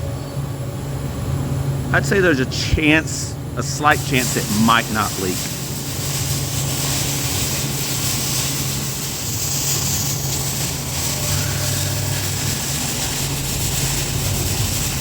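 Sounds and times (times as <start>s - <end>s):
machinery humming: 0.0s - 15.0s.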